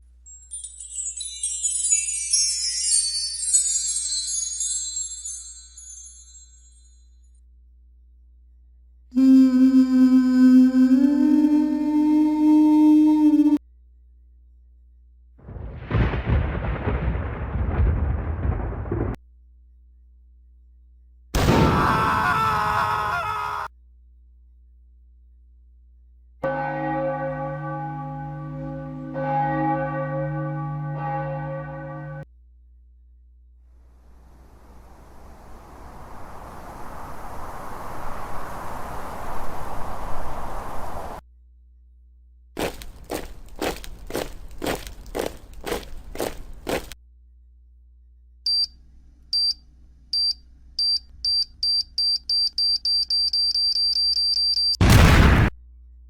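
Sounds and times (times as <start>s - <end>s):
church bell tolling: 26.4s - 32.3s.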